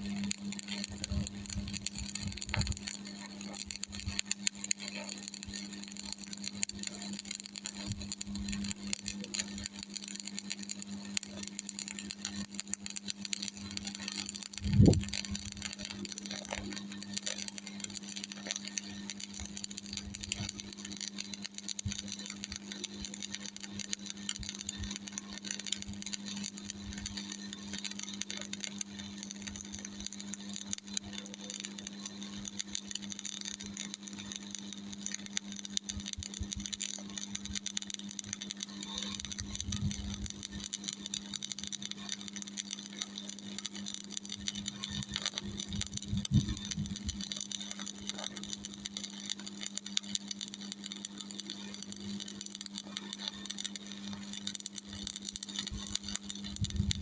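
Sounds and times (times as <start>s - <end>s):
welder low hum: 0.0s - 57.0s
welding arc crackling: 0.0s - 57.0s.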